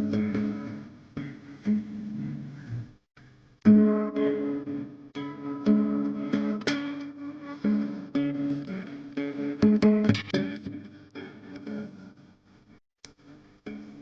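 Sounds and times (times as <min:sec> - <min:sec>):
guitar music: 0:00.0 - 0:02.5, 0:03.6 - 0:12.2.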